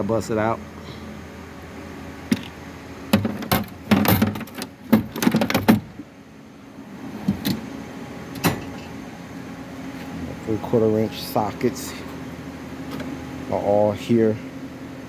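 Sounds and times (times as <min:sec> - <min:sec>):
knocks on toolbox: 0:03.1 - 0:05.9
metal tools clanking and rattling: 0:03.2 - 0:05.9.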